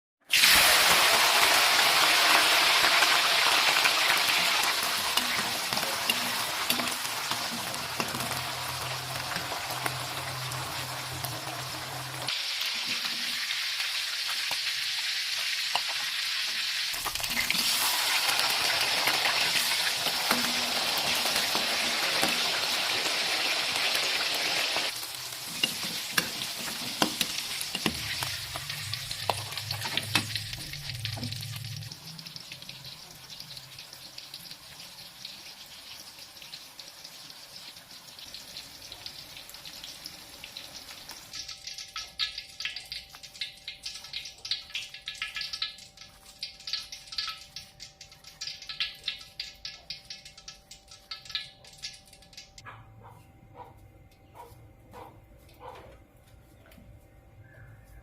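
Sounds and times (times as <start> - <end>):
vegetables sizzling in oil: 0.2 - 52.6
spatula clicking on pan: 41.4 - 52.6.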